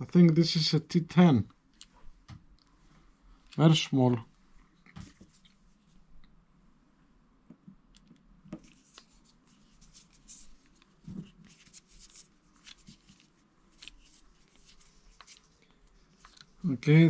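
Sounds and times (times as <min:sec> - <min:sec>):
faint clicks and scraping: 0:07.9 - 0:16.6.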